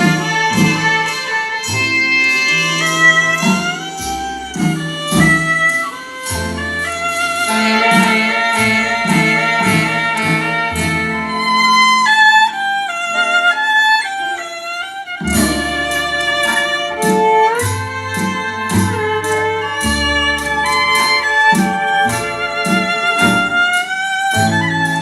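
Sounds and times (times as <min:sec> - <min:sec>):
instrumental music over loudspeakers: 0:00.0 - 0:25.0.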